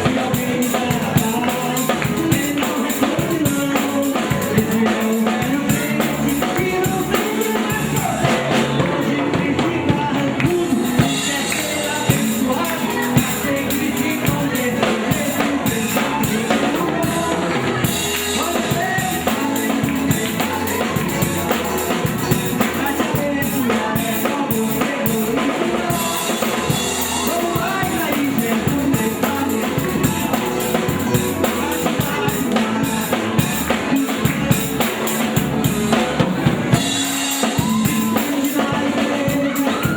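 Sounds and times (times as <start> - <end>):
drum kit beat: 0.0 - 39.9
live band playing: 0.0 - 39.9.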